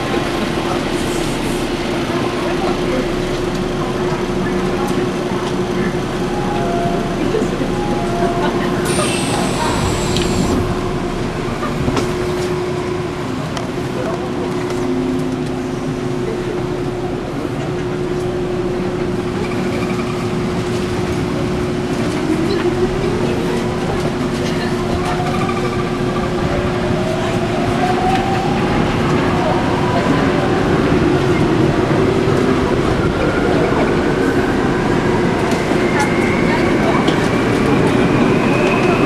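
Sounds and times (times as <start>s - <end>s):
subway train rumbling: 0.0s - 39.0s
rising whine: 6.2s - 12.2s.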